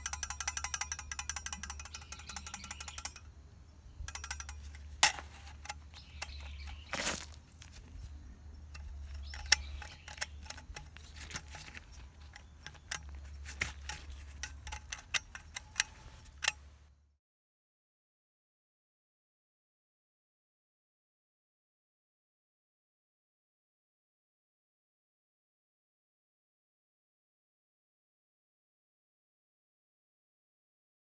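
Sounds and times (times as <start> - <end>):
sharp clinks and knocks: 0.0 - 16.7.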